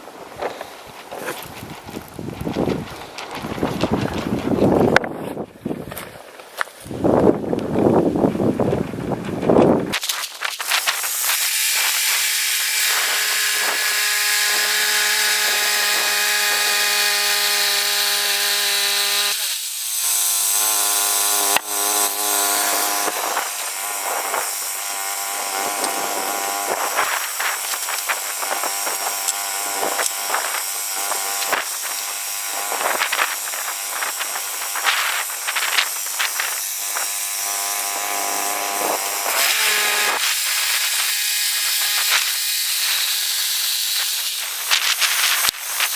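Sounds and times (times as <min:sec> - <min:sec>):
sawmill engine under load: 0:08.6 - 0:45.9
blade cutting log: 0:09.9 - 0:45.9.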